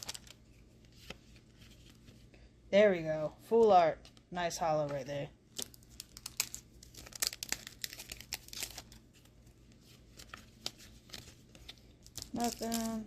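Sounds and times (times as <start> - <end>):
card wrappers crinkling: 0.0 - 2.2, 5.5 - 13.0.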